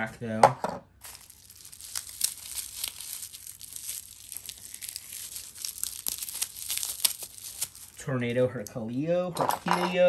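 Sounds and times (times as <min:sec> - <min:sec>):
packaging crinkling and tearing: 0:01.0 - 0:08.0.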